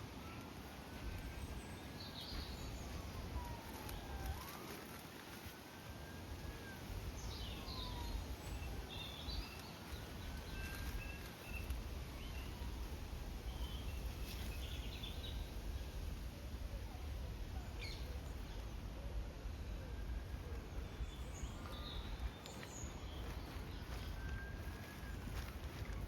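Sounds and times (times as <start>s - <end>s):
birds chirping: 0.0s - 5.0s, 6.3s - 12.8s, 17.3s - 26.0s.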